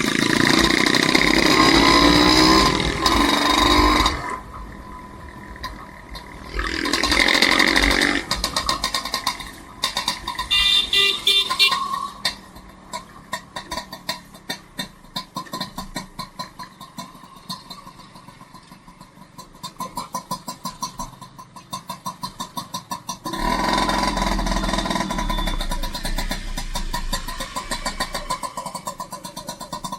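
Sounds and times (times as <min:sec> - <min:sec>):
small engine pulsing: 0:23.3 - 0:29.9.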